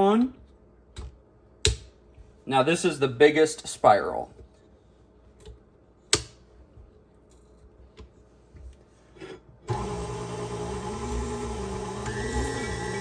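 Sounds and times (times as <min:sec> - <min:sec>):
stand mixer motor running: 0:09.7 - 0:13.0.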